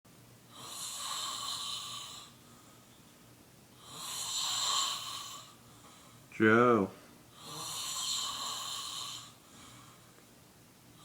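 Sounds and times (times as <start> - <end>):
man snoring: 0.5 - 2.4, 3.8 - 5.5, 7.4 - 9.4.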